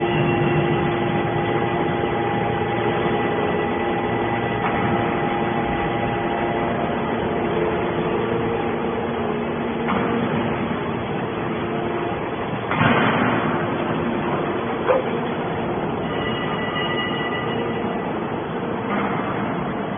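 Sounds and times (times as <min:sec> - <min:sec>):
baler motor humming and whining: 0:00.0 - 0:12.7.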